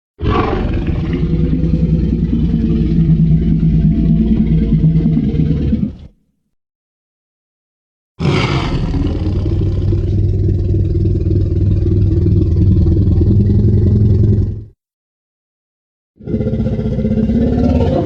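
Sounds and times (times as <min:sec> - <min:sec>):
low rumbling growl: 0:00.2 - 0:06.2, 0:08.2 - 0:14.8, 0:16.2 - 0:18.0.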